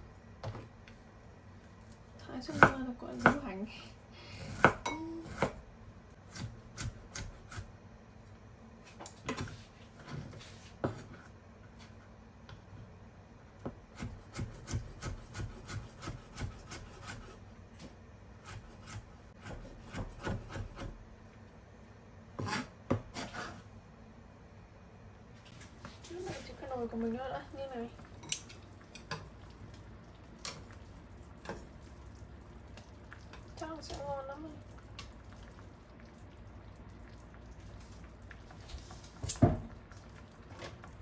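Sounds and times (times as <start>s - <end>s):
knife chopping on wooden board: 4.5s - 5.6s, 18.5s - 21.0s, 22.4s - 23.6s.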